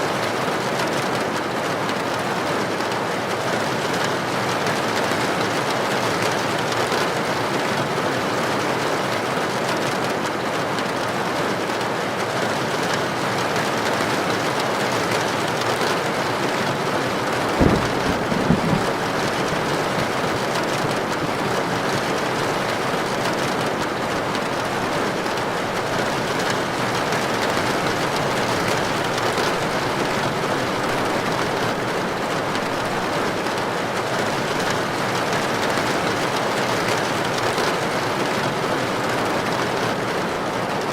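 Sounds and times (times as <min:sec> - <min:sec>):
heavy rain on a tin roof: 0:00.0 - 0:40.9
low thumps: 0:17.4 - 0:20.4.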